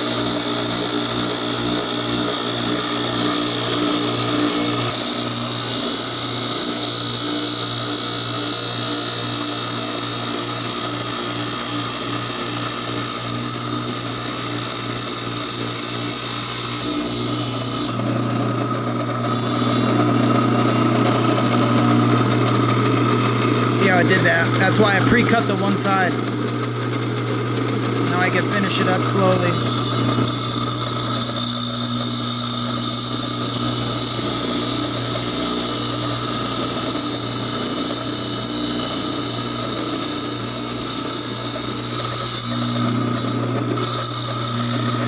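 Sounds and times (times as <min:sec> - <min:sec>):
saw motor hum: 0:00.0 - 0:45.0
blade grinding through glass: 0:09.4 - 0:18.3, 0:19.2 - 0:21.3, 0:28.5 - 0:45.0.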